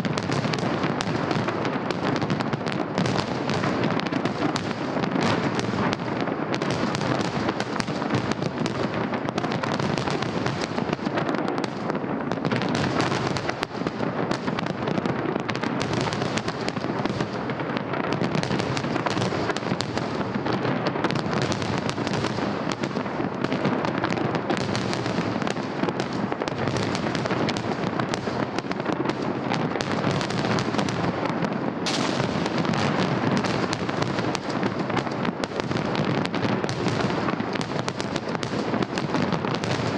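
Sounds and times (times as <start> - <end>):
fireworks bursting and crackling: 0.0 - 39.9.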